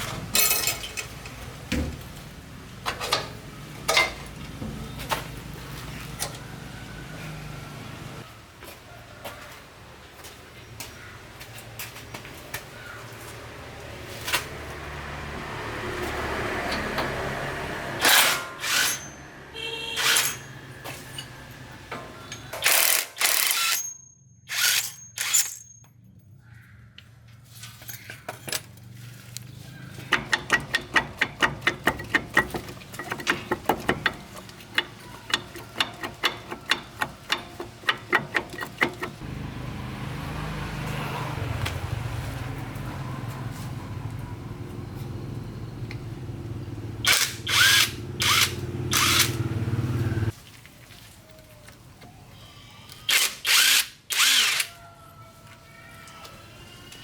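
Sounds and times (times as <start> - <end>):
tools knocking and clanking on metal: 0.0 - 5.4, 21.2 - 22.7, 29.9 - 39.3.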